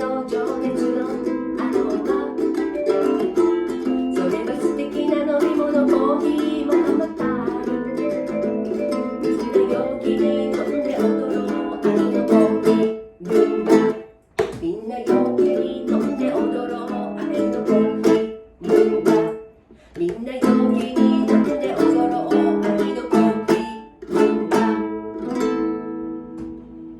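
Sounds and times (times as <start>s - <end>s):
guitar strumming chords: 0.8s - 14.2s, 15.1s - 19.6s.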